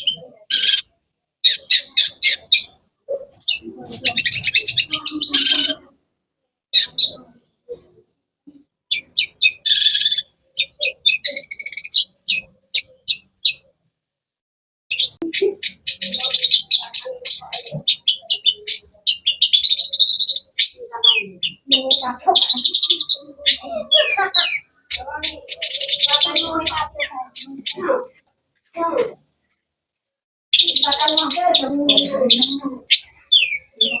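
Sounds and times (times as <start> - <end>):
bird singing: 0.0 - 5.9, 6.7 - 13.7, 14.9 - 28.2, 30.6 - 34.0.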